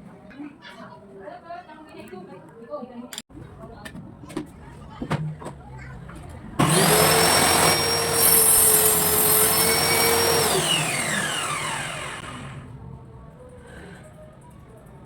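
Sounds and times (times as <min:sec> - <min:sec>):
power tool motor whining: 0:06.6 - 0:12.6.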